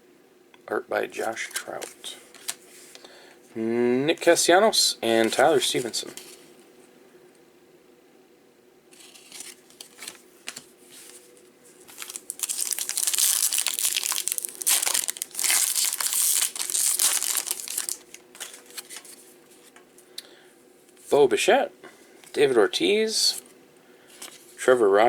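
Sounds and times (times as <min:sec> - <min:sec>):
wrapper tearing and crinkling: 0:11.9 - 0:19.2.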